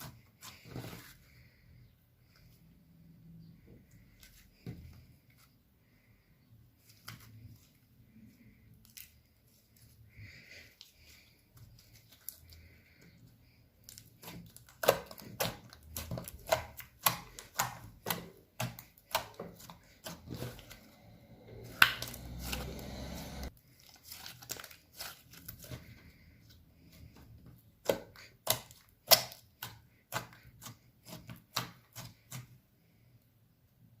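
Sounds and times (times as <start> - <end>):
slime squelching: 6.8 - 32.6.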